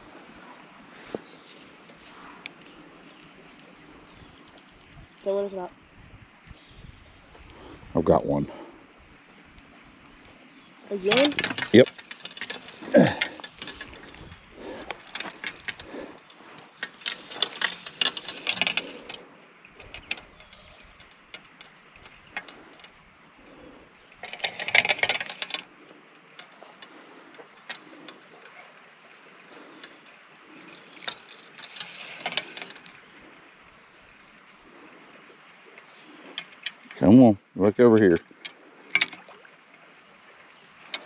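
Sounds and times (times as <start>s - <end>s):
fishing reel whirring: 10.9s - 25.8s, 29.4s - 33.4s.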